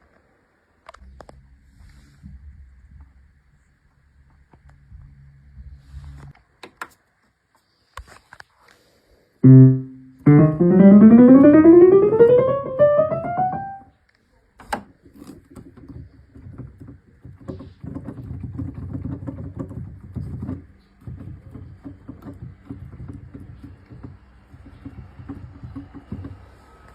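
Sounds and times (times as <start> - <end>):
piano keys clacking: 9.4 - 13.8
digital piano scale run: 9.4 - 13.9.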